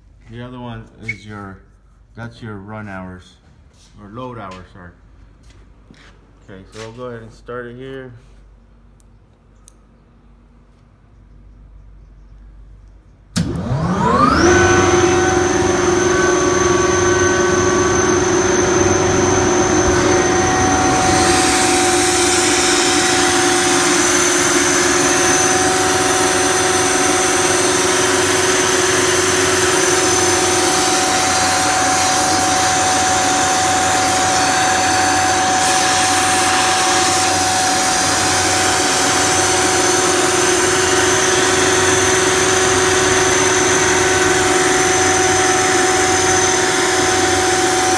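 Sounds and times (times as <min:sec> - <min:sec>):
air compressor running: 0:13.4 - 0:47.9.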